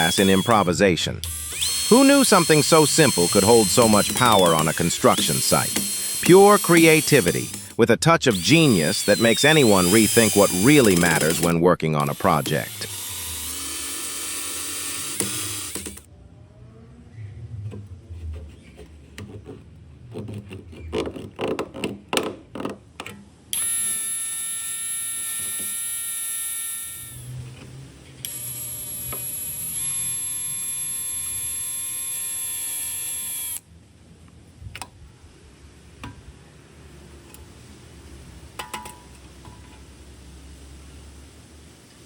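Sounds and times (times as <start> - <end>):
power tool motor whining: 0.0 - 16.1, 23.6 - 27.4, 28.2 - 33.6.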